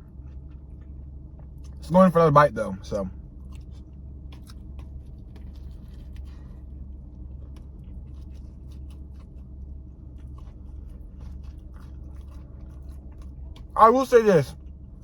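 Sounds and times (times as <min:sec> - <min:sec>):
steady low hum: 0:00.0 - 0:15.0
person chewing: 0:03.4 - 0:13.8.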